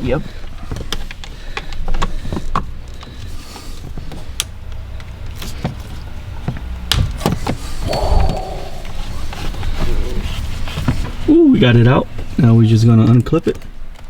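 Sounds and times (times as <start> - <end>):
steady low rumble: 7.8 - 9.4.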